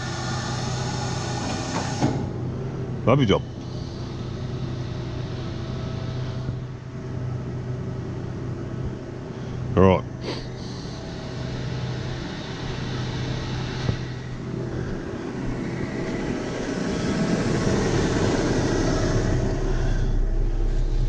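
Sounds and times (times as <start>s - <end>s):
rushing noise: 10.8s - 21.0s
tractor engine running: 10.8s - 21.0s.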